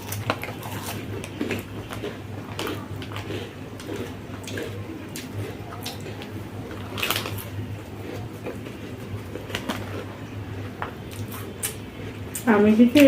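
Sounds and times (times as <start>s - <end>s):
snack food crunching: 0.0s - 13.0s.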